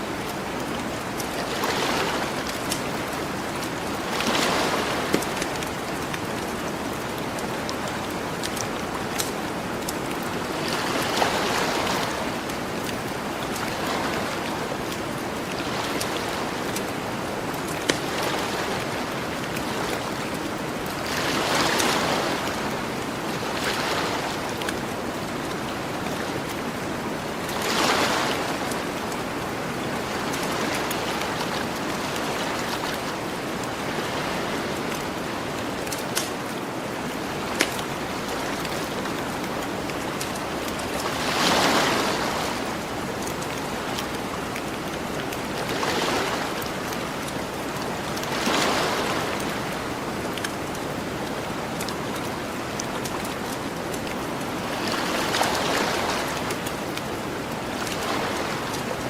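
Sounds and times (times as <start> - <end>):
ocean waves washing onto beach: 0.0 - 59.0
campfire crackling: 5.1 - 10.4.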